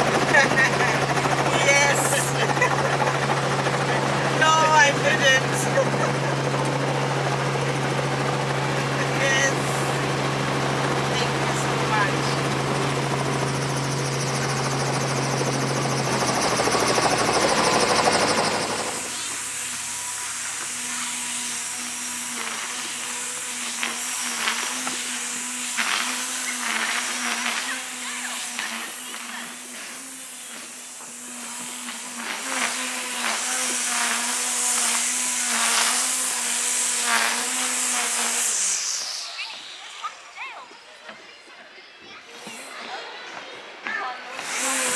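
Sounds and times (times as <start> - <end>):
mechanical whine with hiss: 0.0 - 23.5, 33.7 - 41.1
helicopter in flight: 0.0 - 41.2, 44.2 - 44.9.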